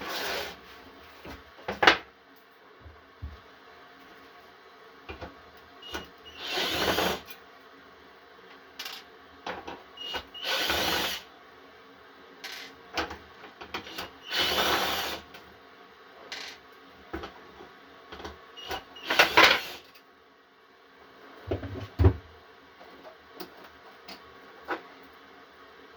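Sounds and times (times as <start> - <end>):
small power tool running: 6.3 - 7.2, 14.2 - 15.2.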